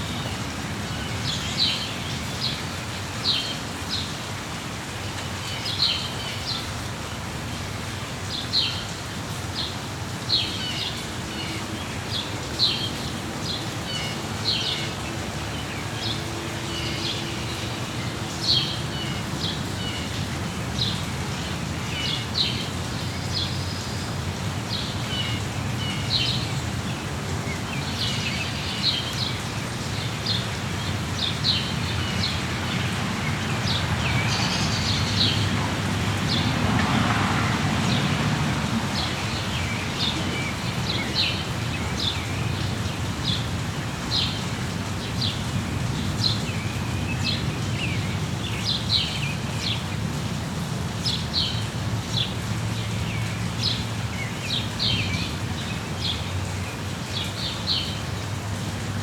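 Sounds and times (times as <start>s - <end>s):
steady rain: 0.0s - 59.0s
small birds chirping: 37.8s - 43.5s.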